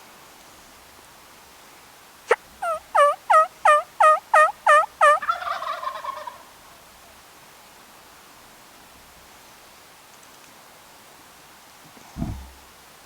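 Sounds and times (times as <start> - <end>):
turkey clucking and yelping: 2.3 - 6.5
turkey gobbling: 2.3 - 6.5.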